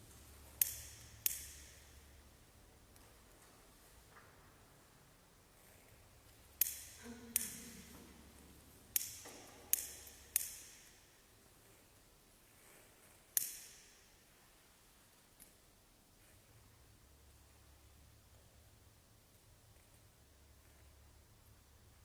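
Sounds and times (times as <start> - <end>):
sharp clicking taps: 0.5 - 2.0, 8.9 - 11.0.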